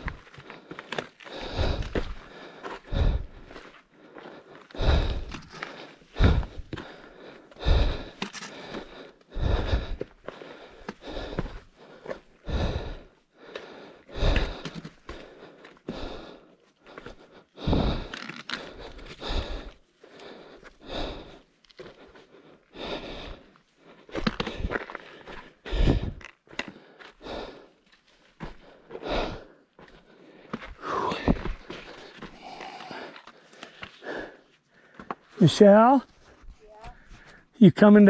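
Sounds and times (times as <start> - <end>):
hard breathing: 0.0 - 37.6
footsteps on rock: 34.9 - 37.4.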